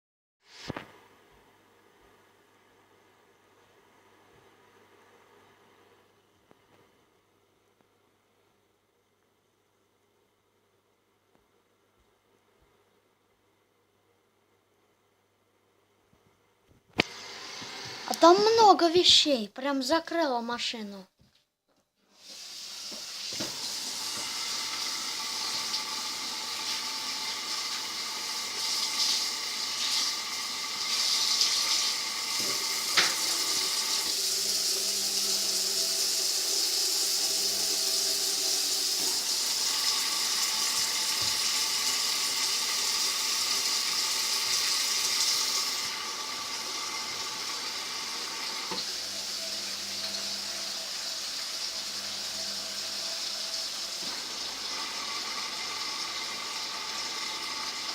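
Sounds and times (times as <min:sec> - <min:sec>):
washing machine hum: 0:16.9 - 0:19.1, 0:22.1 - 0:57.9.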